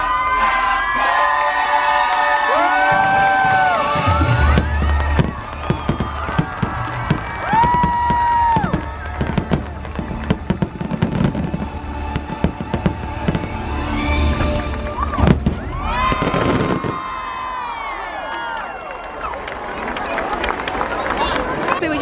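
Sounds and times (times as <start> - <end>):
fireworks bangs and crackles: 2.6 - 17.5.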